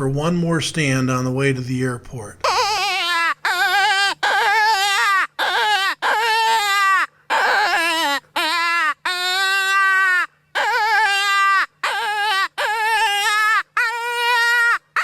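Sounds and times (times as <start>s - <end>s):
predator call rabbit distress wails: 2.4s - 15.0s.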